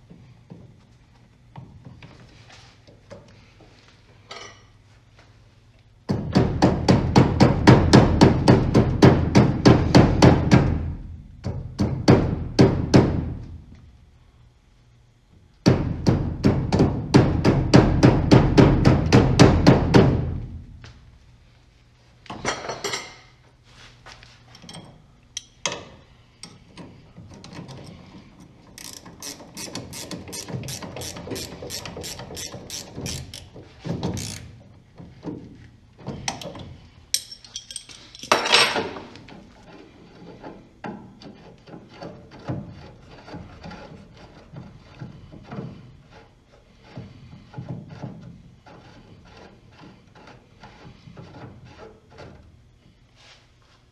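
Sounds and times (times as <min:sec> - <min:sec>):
ratchet wrench clicking: 0:28.8 - 0:34.5
tools clattering: 0:28.8 - 0:34.5, 0:36.4 - 0:39.0
metallic clinks: 0:37.2 - 0:38.7.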